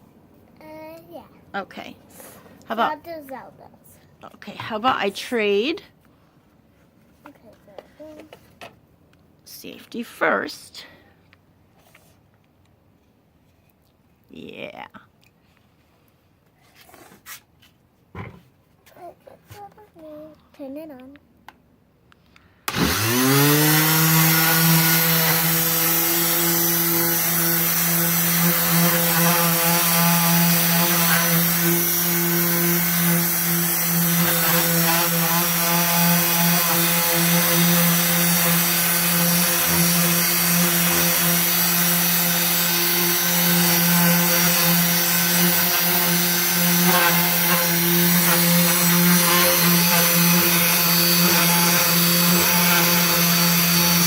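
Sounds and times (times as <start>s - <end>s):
orbital sander motor humming: 22.7s - 54.0s.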